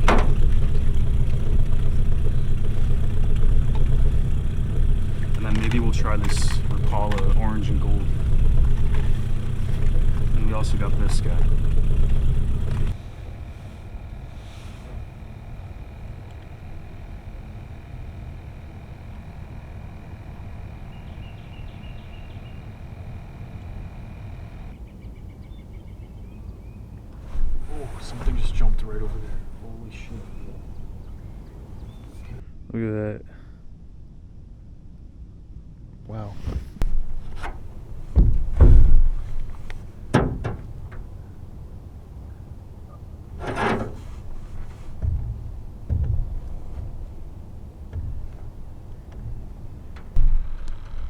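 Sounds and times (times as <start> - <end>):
boat motor rumbling: 0.0 - 25.3, 26.8 - 32.4, 36.1 - 51.0
scrape: 14.4 - 14.8, 27.2 - 28.2, 43.4 - 45.0.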